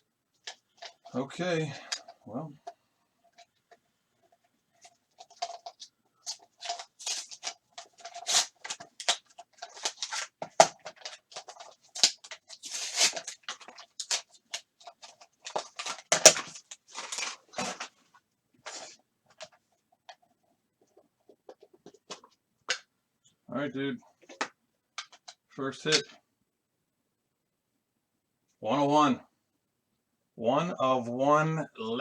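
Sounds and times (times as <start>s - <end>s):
packaging rustling and crinkling: 3.3s - 19.6s.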